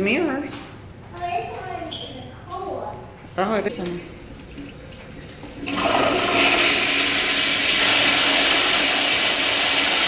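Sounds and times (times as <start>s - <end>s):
toilet flushing: 4.0s - 10.0s.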